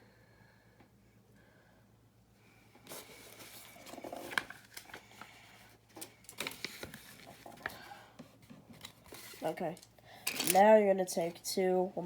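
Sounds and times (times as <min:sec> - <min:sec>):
plastic pieces rustling: 0:08.8 - 0:10.8.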